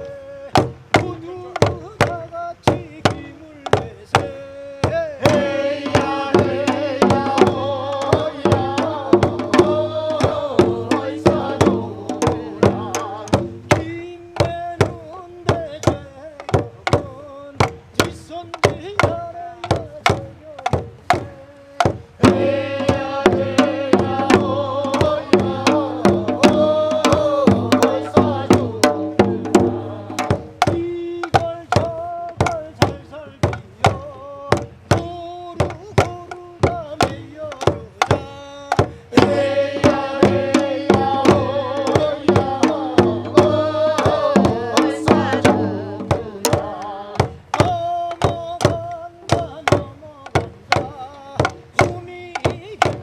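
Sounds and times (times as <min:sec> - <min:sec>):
steady percussion strokes: 0:00.5 - 0:53.0
pitched folk melody: 0:38.9 - 0:48.2.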